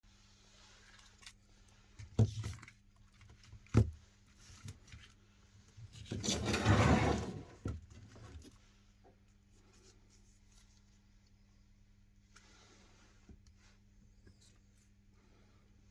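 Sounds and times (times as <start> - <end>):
rustling handling noise: 0.1 - 15.0
faint steady hum: 0.1 - 15.9.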